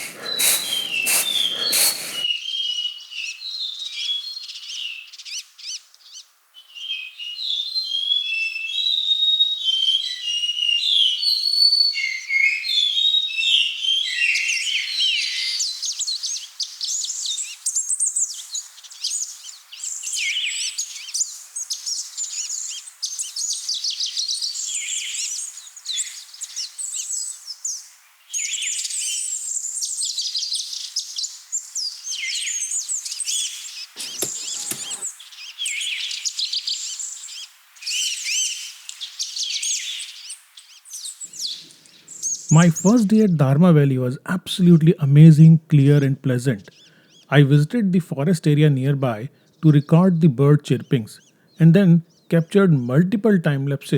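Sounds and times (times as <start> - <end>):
small birds chirping and singing: 0.0 - 2.2.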